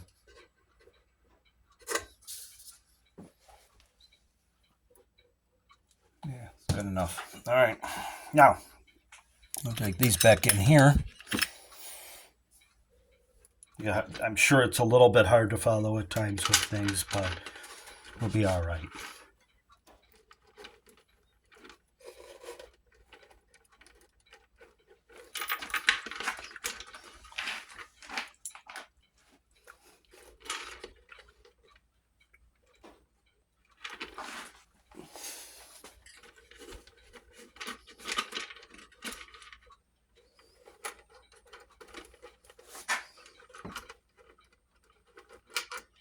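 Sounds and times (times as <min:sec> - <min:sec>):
small metal parts clinking: 0:09.6 - 0:11.6, 0:16.0 - 0:19.1, 0:23.8 - 0:28.9.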